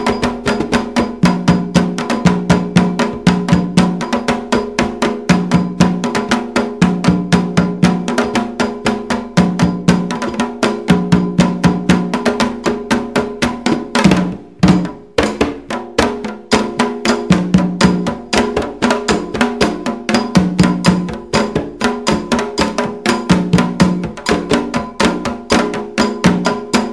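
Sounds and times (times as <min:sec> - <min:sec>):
struck metal bell: 0:00.0 - 0:12.2, 0:16.5 - 0:26.9
hand drums: 0:00.0 - 0:26.9.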